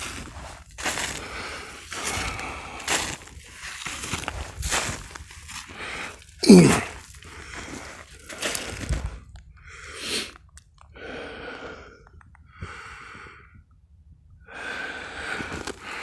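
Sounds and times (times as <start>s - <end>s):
person breathing: 0.0s - 4.9s, 5.6s - 13.7s, 14.4s - 16.0s
snowshoe footsteps crunching snow: 0.0s - 9.2s, 15.2s - 16.0s.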